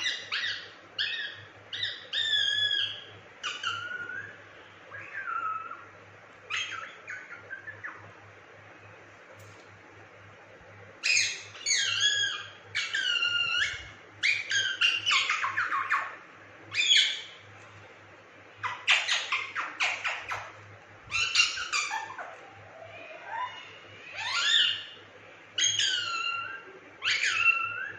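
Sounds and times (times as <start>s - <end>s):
parakeet squawking: 0.0s - 4.3s, 5.0s - 5.9s, 6.5s - 8.1s, 11.0s - 17.4s, 18.6s - 25.0s, 25.6s - 27.9s.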